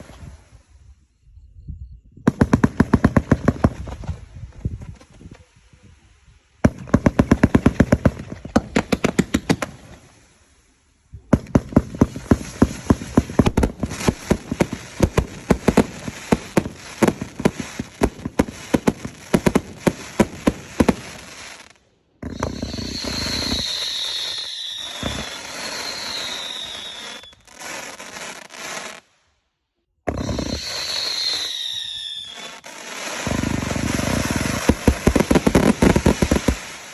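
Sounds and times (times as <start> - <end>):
fireworks crackling bangs: 6.6 - 10.6, 11.2 - 29.1, 30.1 - 36.9
whistling fireworks falling in pitch: 6.6 - 29.2, 30.0 - 36.9
fireworks hissing: 11.9 - 29.2, 30.1 - 36.9.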